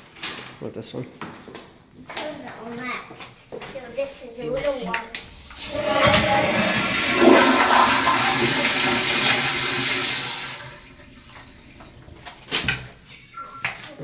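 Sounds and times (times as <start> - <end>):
toilet flushing: 5.2 - 13.5.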